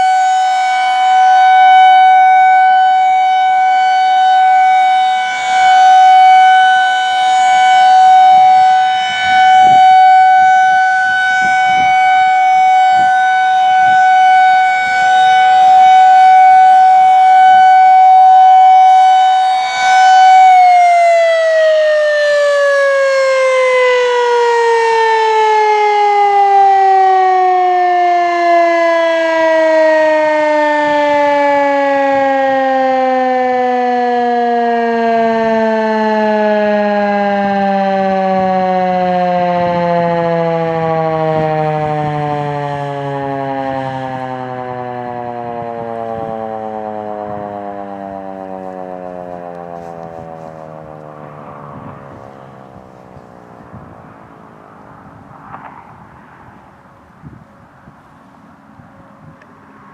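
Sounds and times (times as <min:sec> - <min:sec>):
tornado siren wailing: 0:00.0 - 0:59.9.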